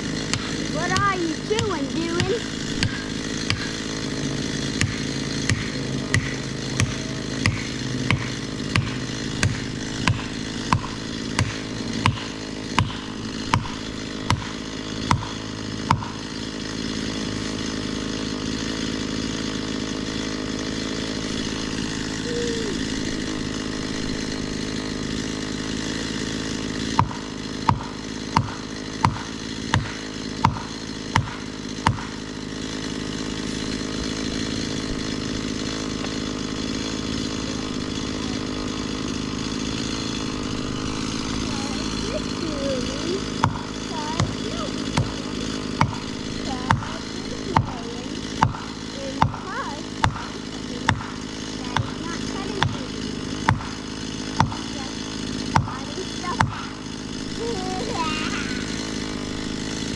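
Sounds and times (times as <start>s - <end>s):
chainsaw running: 0.0s - 59.9s
sharp knocks: 4.5s - 16.3s, 26.9s - 32.2s.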